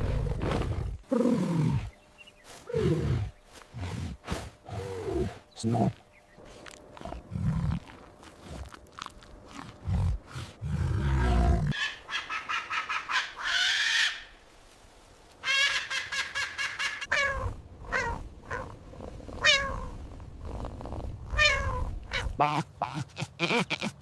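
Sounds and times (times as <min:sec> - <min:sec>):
animal low grunts: 0:02.7 - 0:11.8, 0:18.0 - 0:24.0.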